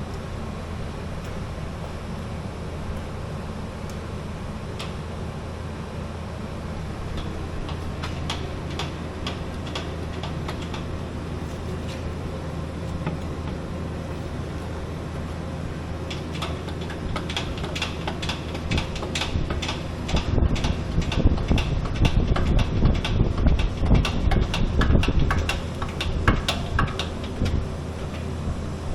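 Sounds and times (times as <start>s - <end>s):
machinery humming: 0.0s - 28.9s
clicking and rattling: 16.0s - 28.3s.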